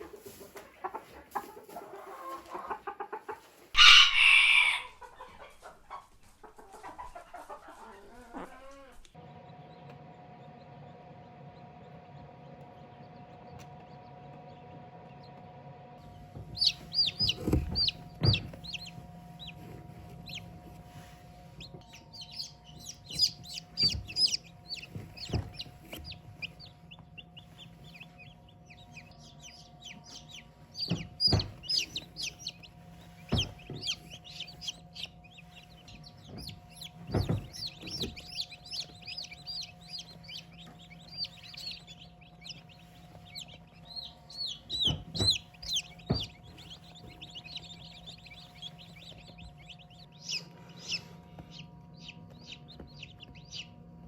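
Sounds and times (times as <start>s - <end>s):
chickens peeping: 0.0s - 15.4s, 16.0s - 54.0s
steady hum: 9.2s - 54.0s
dull knocks: 16.2s - 21.1s, 21.7s - 26.8s, 30.2s - 50.0s.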